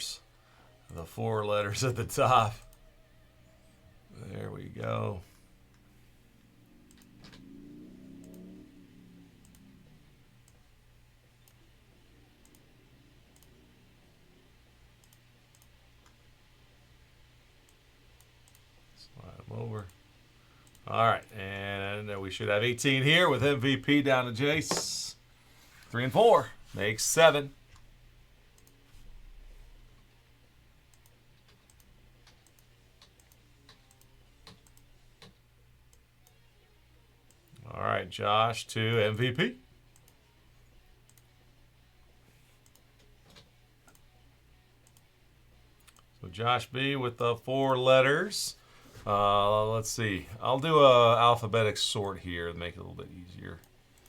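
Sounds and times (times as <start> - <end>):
low electrical hum: 0.0 - 54.0
faint computer clicks: 6.8 - 7.5, 9.4 - 9.7, 12.4 - 12.7, 13.3 - 13.6, 15.0 - 16.2, 20.6 - 21.4, 28.5 - 28.8, 30.9 - 36.4, 42.6 - 44.1.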